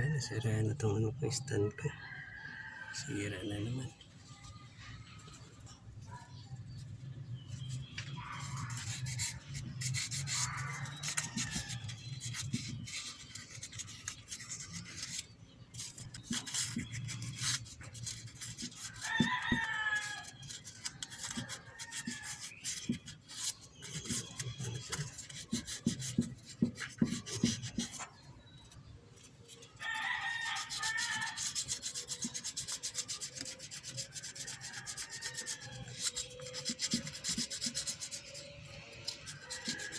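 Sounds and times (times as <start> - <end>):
sandpaper scratching metal: 7.5 - 28.1, 29.5 - 39.9
rooster crowing: 19.0 - 20.4, 29.8 - 31.6, 34.4 - 36.7, 39.1 - 39.9.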